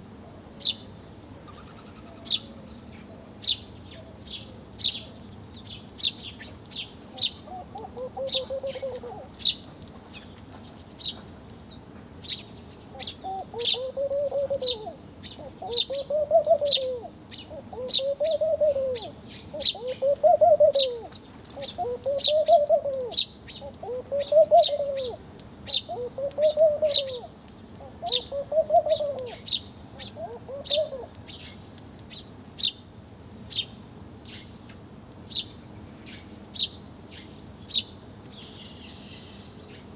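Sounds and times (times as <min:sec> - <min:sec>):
small birds chirping: 0:00.6 - 0:39.9
rising and falling bird call: 0:12.3 - 0:31.1.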